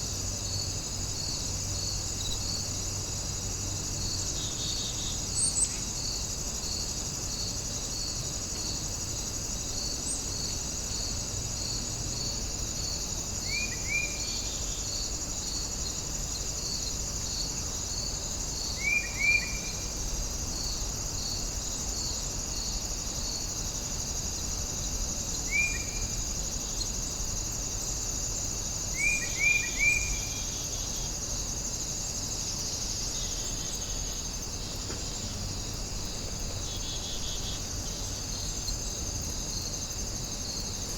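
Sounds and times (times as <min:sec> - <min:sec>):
insect high-pitched trill: 0:00.0 - 0:40.9.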